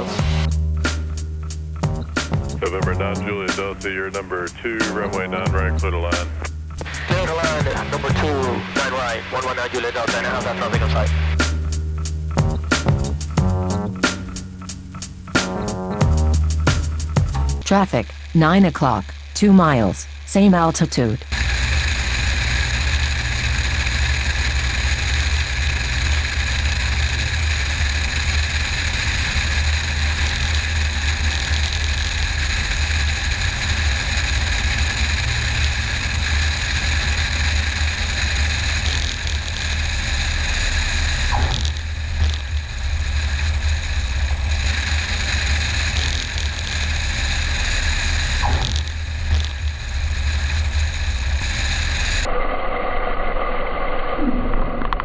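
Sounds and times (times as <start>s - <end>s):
light airplane engine droning: 0.0s - 18.4s.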